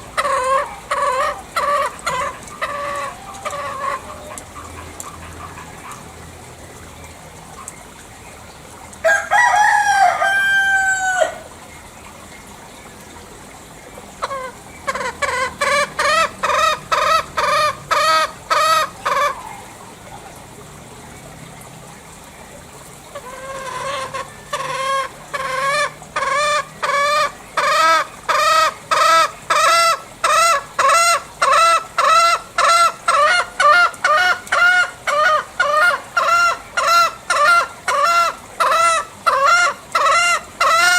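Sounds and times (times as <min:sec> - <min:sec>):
junglefowl calling: 0:00.0 - 0:06.1, 0:09.0 - 0:11.6, 0:14.2 - 0:19.9, 0:23.1 - 0:40.9.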